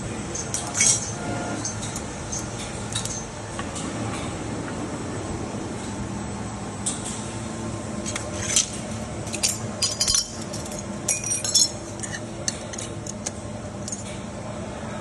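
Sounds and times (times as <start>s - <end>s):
machine hum: 0.0s - 15.0s
glass clinking: 9.8s - 12.9s.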